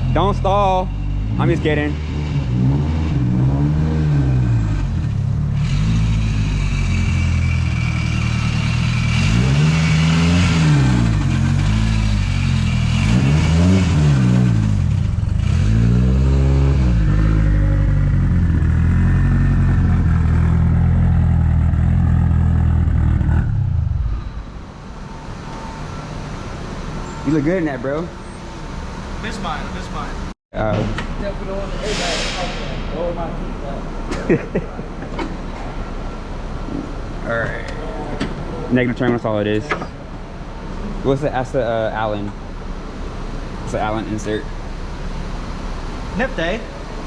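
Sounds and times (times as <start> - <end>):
car engine revving: 0.0 - 30.3.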